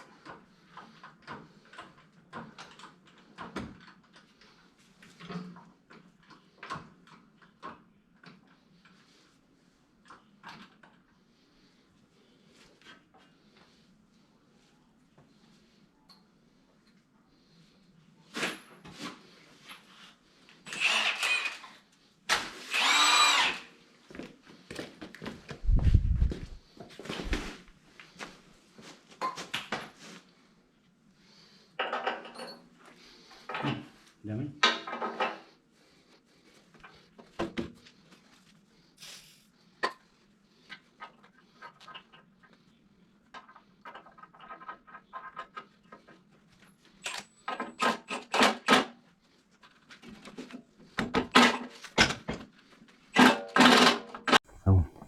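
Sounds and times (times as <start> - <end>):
power tool whining: 20.7 - 21.8, 22.6 - 23.7.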